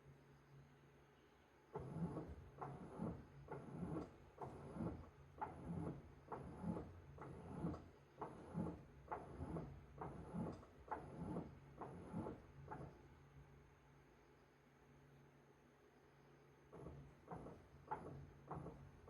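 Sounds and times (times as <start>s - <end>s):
washing machine motor hum: 1.8s - 13.5s, 16.6s - 19.0s.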